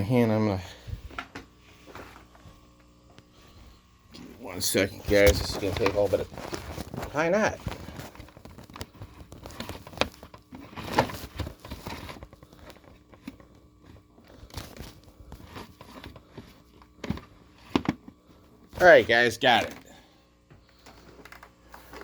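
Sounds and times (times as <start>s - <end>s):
power cord rustling: 4.7s - 18.2s.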